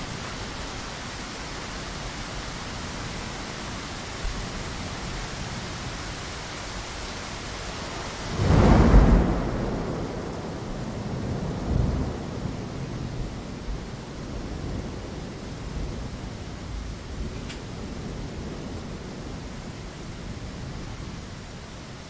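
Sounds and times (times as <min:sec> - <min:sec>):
rain hissing: 0:00.0 - 0:12.4
deep rumble of thunder: 0:07.8 - 0:21.4.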